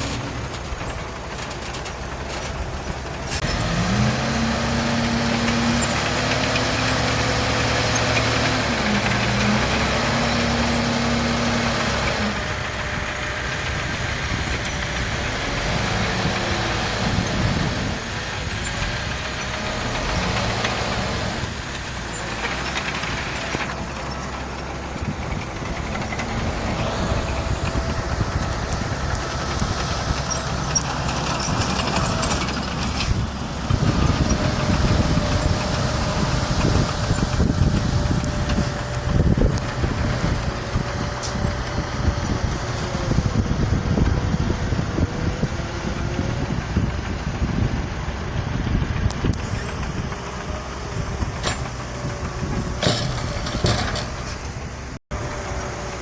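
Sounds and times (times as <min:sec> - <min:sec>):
diesel machinery running: 0:00.0 - 0:56.0.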